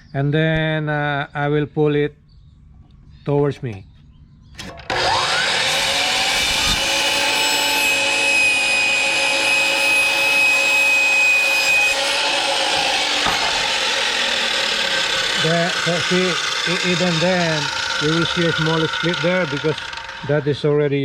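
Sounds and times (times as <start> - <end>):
miter saw cutting wood: 4.6 - 21.0.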